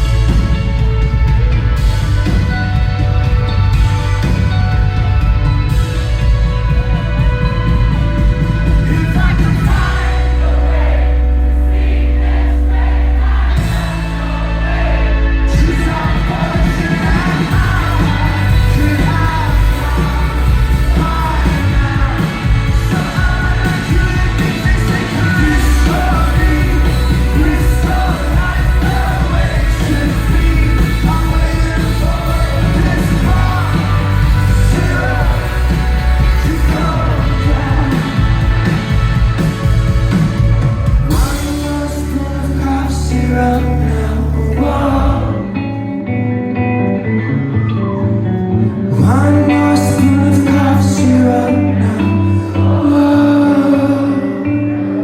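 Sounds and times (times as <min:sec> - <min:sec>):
live rock band playing: 0:00.0 - 0:55.0
picked guitar notes: 0:00.0 - 0:55.0
person singing: 0:13.6 - 0:39.2, 0:41.1 - 0:55.0.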